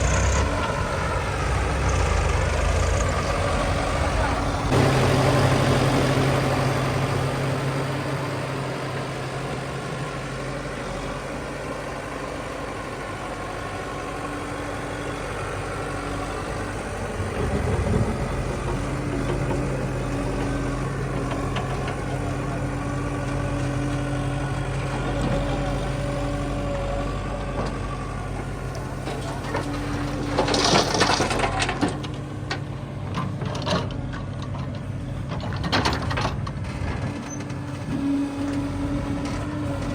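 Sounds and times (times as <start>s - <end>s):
diesel engine of heavy machinery: 0.0s - 39.9s.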